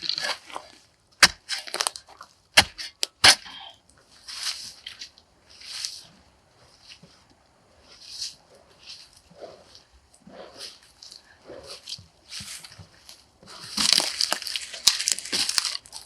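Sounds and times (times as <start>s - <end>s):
soft scraping rustles: 4.0s - 16.0s
dry sticks snapping: 13.8s - 16.0s.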